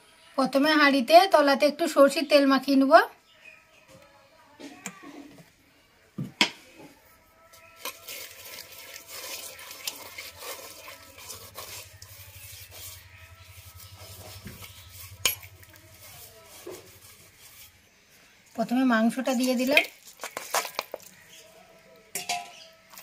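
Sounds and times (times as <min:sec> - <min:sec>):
hand rubbing clay pot: 0:07.5 - 0:17.9.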